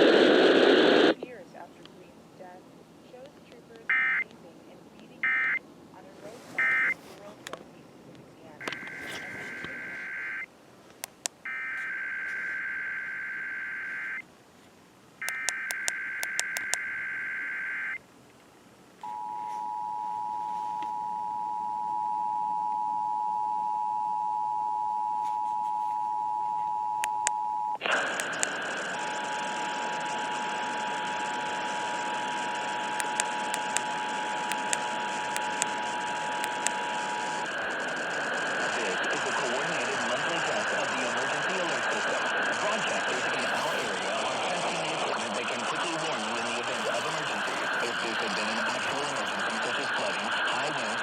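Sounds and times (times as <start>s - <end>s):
loud static hiss: 0.0s - 3.8s, 27.8s - 51.0s.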